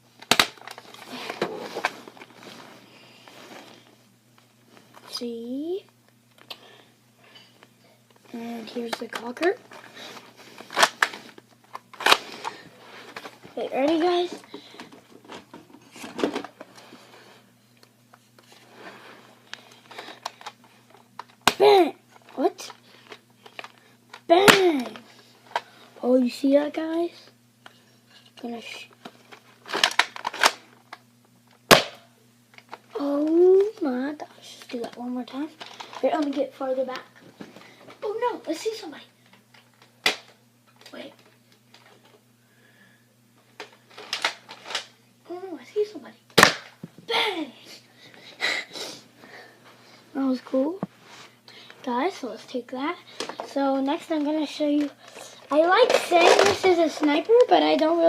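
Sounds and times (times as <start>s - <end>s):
faint steady hum: 0.0s - 58.0s
plastic toy gun clicks and rustles: 0.2s - 1.5s, 10.6s - 12.4s, 29.6s - 30.6s, 43.6s - 44.9s, 54.2s - 57.9s
plastic rustling: 0.2s - 3.9s, 53.1s - 58.0s.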